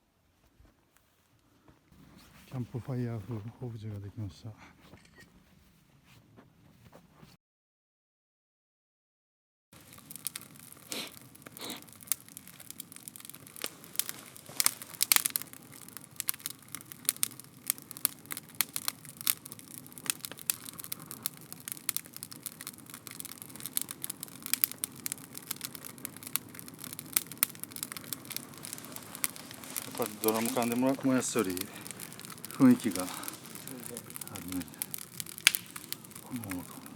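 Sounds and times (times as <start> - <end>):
bonfire crackling and popping: 9.8 - 36.9
low rush of flame: 9.8 - 36.9.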